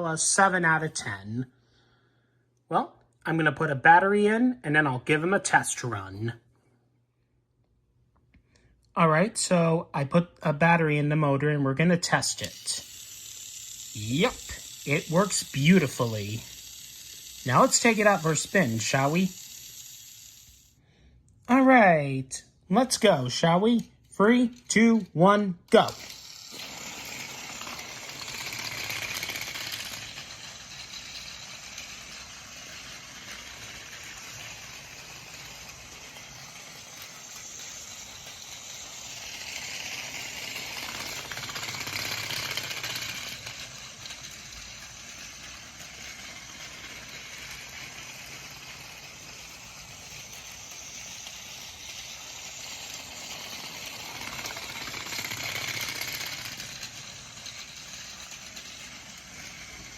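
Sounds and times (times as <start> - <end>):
toy train motor whirring: 4.8 - 6.2, 10.3 - 21.2, 22.4 - 59.9
wheels rattling on plastic track: 11.4 - 20.8, 22.8 - 59.9.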